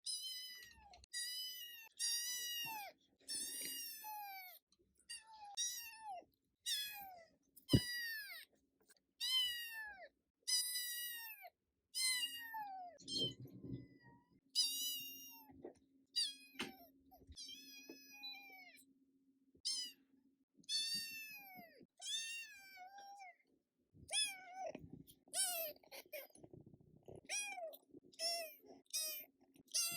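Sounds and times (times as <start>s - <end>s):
kitten meowing: 19.7s - 20.0s.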